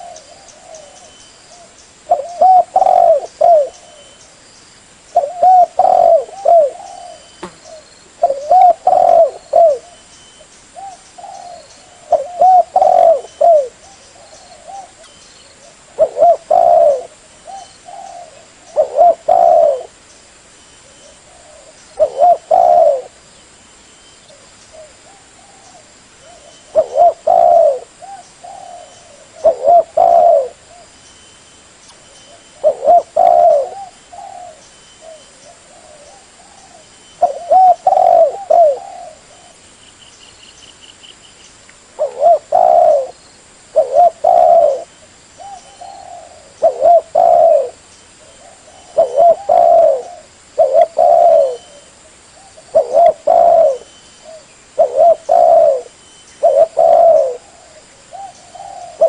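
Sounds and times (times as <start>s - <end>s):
dove cooing: 0.0s - 4.2s, 5.1s - 10.0s, 10.8s - 20.0s, 20.8s - 23.2s, 24.3s - 31.0s, 32.1s - 39.6s, 42.0s - 59.0s.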